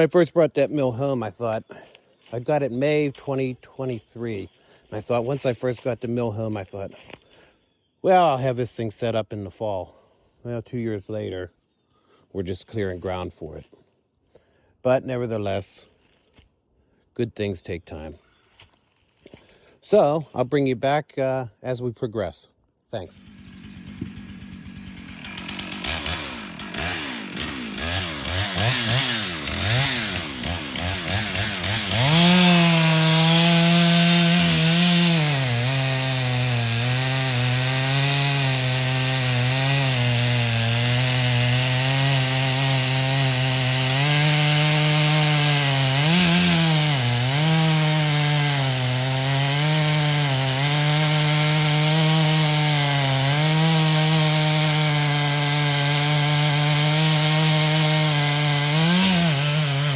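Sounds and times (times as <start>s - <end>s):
chainsaw cutting into tree: 0.8s - 7.4s, 23.2s - 59.9s
chainsaw revving: 23.1s - 59.9s.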